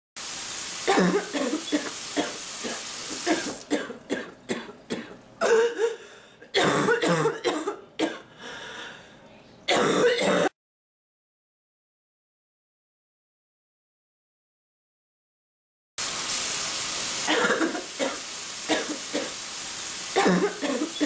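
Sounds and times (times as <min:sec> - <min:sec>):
steady hiss: 0:00.2 - 0:03.8, 0:16.0 - 0:21.0
person coughing: 0:00.9 - 0:08.3, 0:09.7 - 0:10.6, 0:17.3 - 0:19.3, 0:20.2 - 0:21.0
throat clearing: 0:20.2 - 0:21.0.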